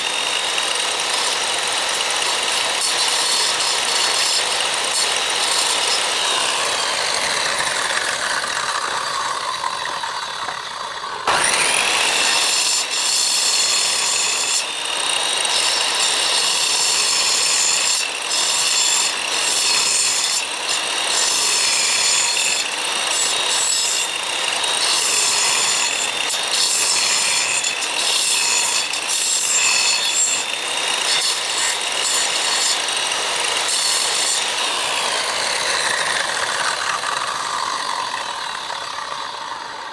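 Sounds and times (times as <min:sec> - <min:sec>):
tool scraping wood: 0:00.0 - 0:14.8
power tool motor whining: 0:00.0 - 0:39.9.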